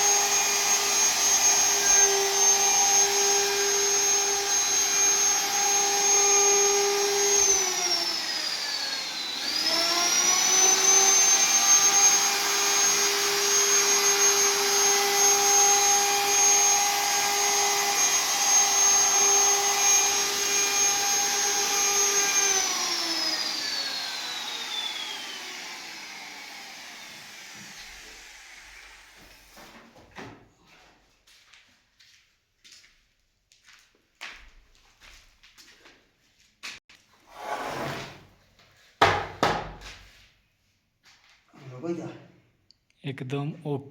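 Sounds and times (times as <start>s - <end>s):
woodworking machine motor whine: 0.0s - 29.3s.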